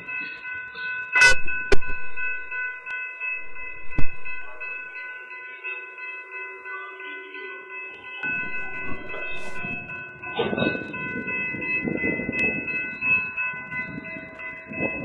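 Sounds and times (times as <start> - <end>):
train rumbling on rails: 0.2 - 5.2, 8.2 - 15.0
steady high tones: 1.2 - 5.1, 8.2 - 10.0.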